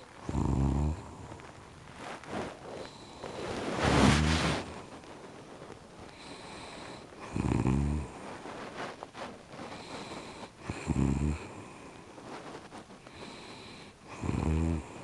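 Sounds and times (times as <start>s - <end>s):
low snores: 0.0s - 1.4s, 2.6s - 4.8s, 6.2s - 8.3s, 9.8s - 11.8s, 13.2s - 15.0s.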